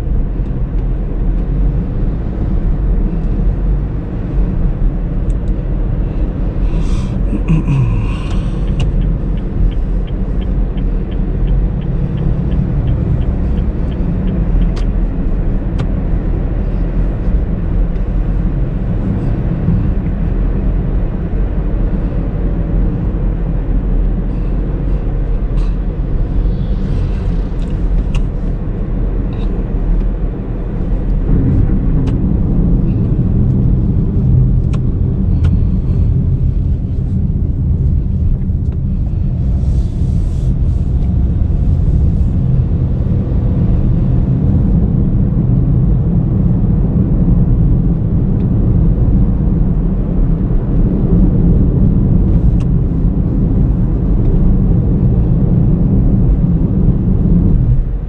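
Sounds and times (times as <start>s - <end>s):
car engine and road noise: 0.0s - 58.0s.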